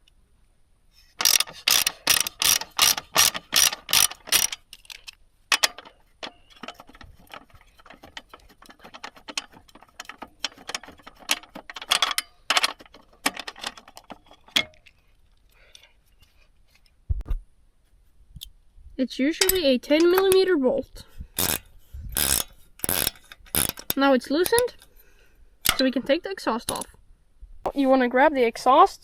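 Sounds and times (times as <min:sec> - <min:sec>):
ratchet wrench clicking: 0:01.2 - 0:14.2, 0:21.4 - 0:24.8.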